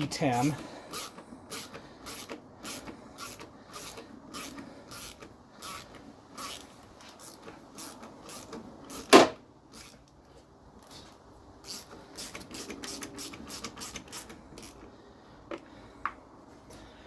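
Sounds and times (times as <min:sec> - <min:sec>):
ratchet clicking: 0:00.9 - 0:10.1, 0:11.6 - 0:14.9.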